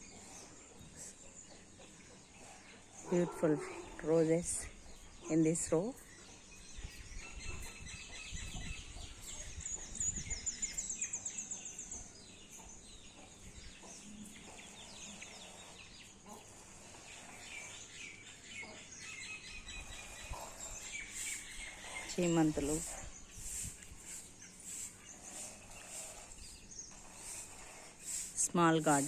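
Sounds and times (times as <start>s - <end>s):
birds chirping and calling: 0.0s - 29.0s.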